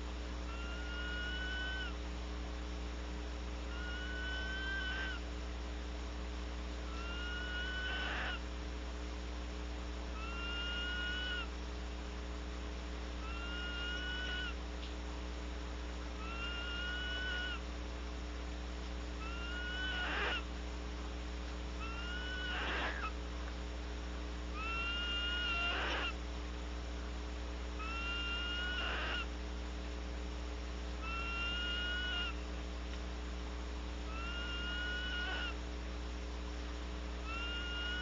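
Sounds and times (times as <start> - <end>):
electrical hum: 0.0 - 38.0
barn owl screeching: 0.5 - 2.0, 3.7 - 5.2, 6.9 - 8.4, 10.1 - 11.5, 13.2 - 14.6, 16.2 - 17.6, 19.2 - 20.5, 21.8 - 23.2, 24.5 - 26.2, 27.8 - 29.3, 31.0 - 32.4, 34.1 - 35.6, 37.2 - 38.0.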